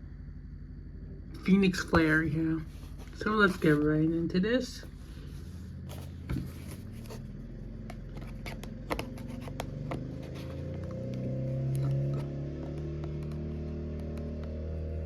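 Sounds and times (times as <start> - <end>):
box being handled and opened: 2.7 - 3.9, 5.9 - 7.3, 7.9 - 13.5.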